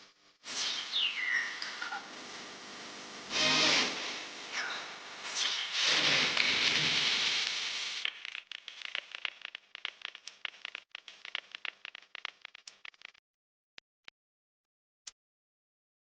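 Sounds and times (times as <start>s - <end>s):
loud hiss: 3.3s - 4.3s, 5.2s - 8.0s
sharp crackling clicks: 7.4s - 13.2s.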